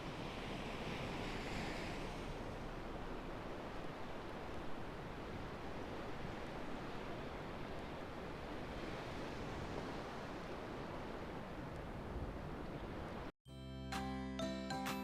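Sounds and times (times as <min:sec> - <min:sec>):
ocean waves washing on beach: 0:00.0 - 0:13.3
wind rumble on microphone: 0:00.0 - 0:13.3.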